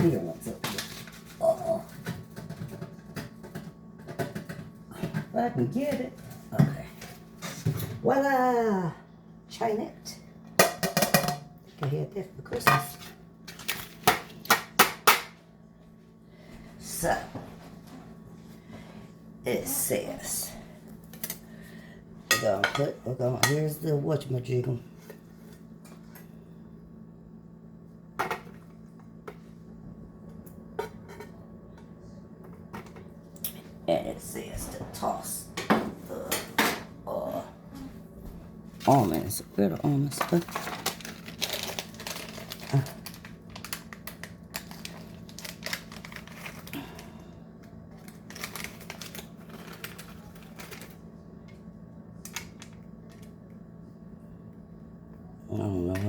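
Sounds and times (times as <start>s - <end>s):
steady low hum: 0.0s - 56.0s
utensils clinking against dishes: 22.3s - 23.8s
almonds clicking and rustling: 39.9s - 46.7s.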